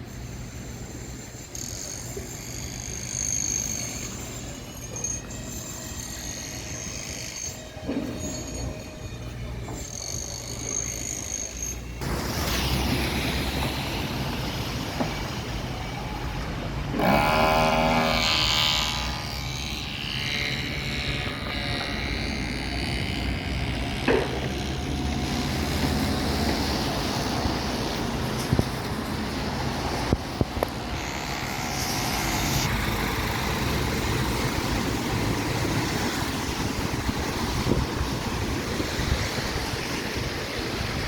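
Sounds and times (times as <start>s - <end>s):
vehicle engines rumbling: 2.1s - 41.0s
engine passing: 12.0s - 41.0s.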